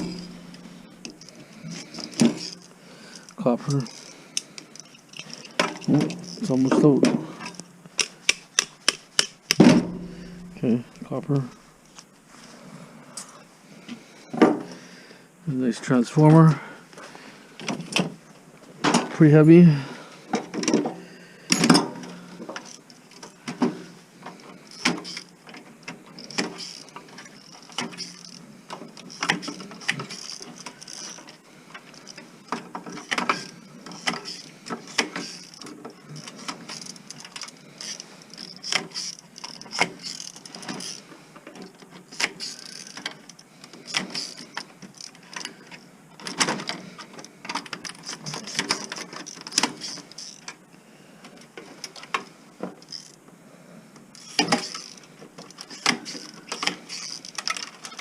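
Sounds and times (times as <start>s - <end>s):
metallic clicks of hand tools: 7.4s - 12.0s.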